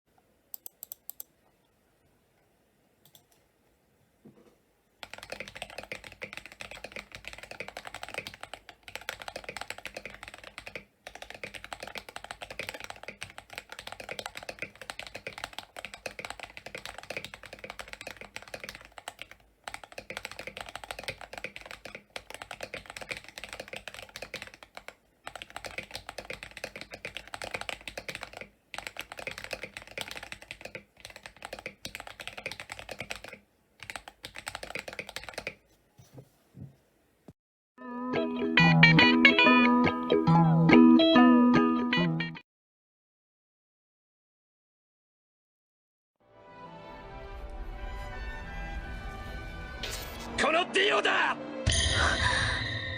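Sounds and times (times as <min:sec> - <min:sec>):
fast typing on mechanical keyboard: 0:05.0 - 0:35.6.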